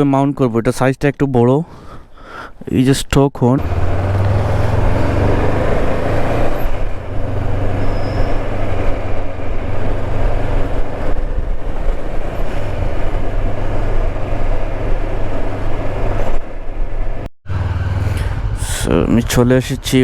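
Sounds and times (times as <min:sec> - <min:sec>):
motorcycle engine running: 0:03.6 - 0:16.2, 0:17.5 - 0:19.3
wind rushing over microphone: 0:03.6 - 0:20.0.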